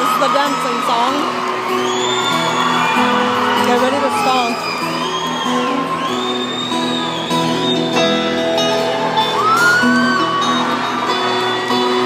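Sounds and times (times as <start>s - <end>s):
live folk-rock band: 0.0s - 12.0s
plucked acoustic guitar: 0.0s - 12.0s
high whistle: 1.7s - 3.3s, 4.3s - 8.5s.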